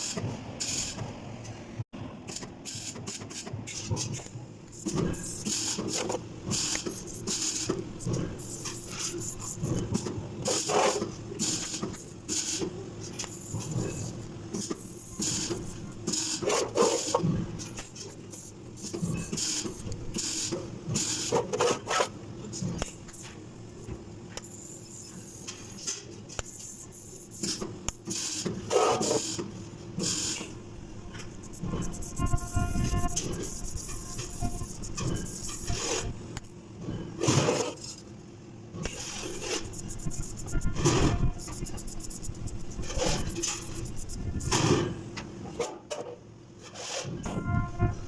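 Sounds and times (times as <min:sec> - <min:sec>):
steady low hum: 0:29.5 - 0:37.2, 0:38.5 - 0:45.1, 0:47.2 - 0:48.0
welding arc hissing and buzzing: 0:30.0 - 0:36.4, 0:38.9 - 0:44.7
scraping and rubbing: 0:31.1 - 0:36.2, 0:39.0 - 0:44.7.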